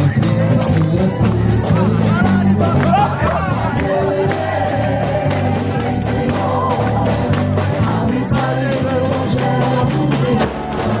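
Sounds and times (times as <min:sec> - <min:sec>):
singing over drums and bass: 0:00.0 - 0:11.0.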